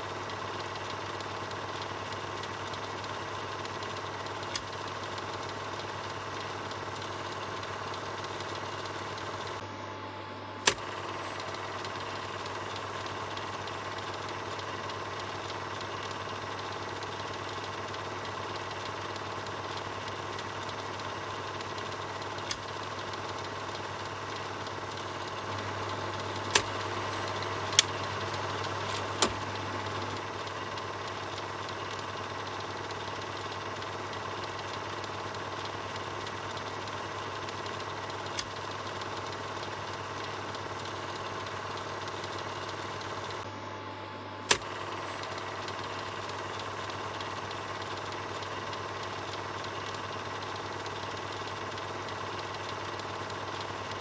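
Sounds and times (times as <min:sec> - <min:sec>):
sharp projector clicks: 0:00.0 - 0:09.6, 0:10.6 - 0:43.5, 0:44.4 - 0:54.0
film projector whirring: 0:00.0 - 0:54.0.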